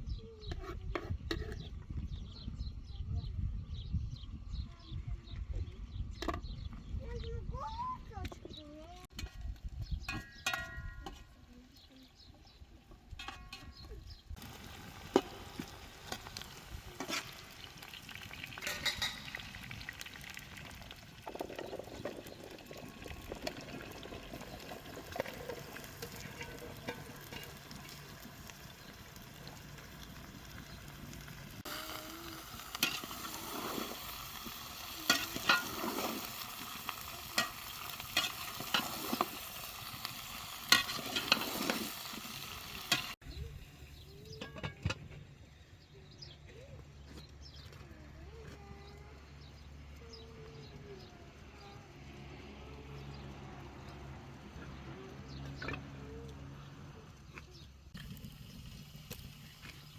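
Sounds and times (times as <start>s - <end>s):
food sizzling in a pan: 14.4s - 43.2s, 58.0s - 59.9s
utensil scraping a pan: 18.6s - 19.6s, 24.3s - 29.6s, 31.6s - 43.2s.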